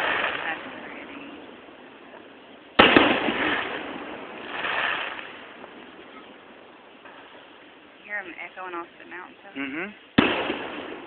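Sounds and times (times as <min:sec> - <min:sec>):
rumbling echo off mountains: 0:00.0 - 0:09.0
firework shell bang: 0:02.8 - 0:04.4, 0:10.2 - 0:11.0.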